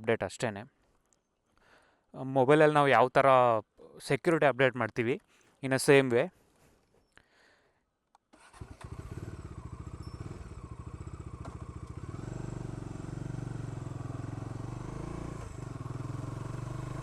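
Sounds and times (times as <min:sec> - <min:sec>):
motorcycle engine starting and running: 0:08.4 - 0:17.0.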